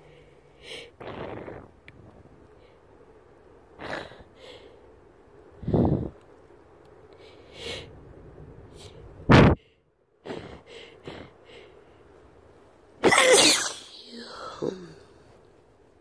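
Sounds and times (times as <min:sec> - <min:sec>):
sniffs and breaths: 0:09.6 - 0:11.8
person sneezing: 0:13.0 - 0:15.0.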